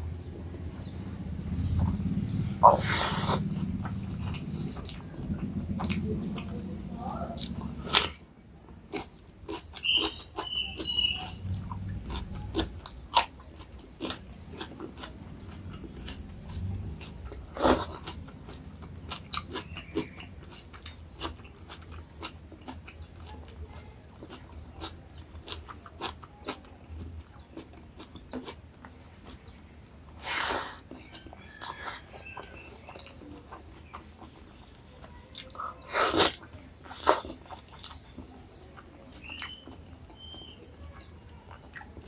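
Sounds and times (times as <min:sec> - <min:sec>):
chewing food: 0:00.0 - 0:42.0.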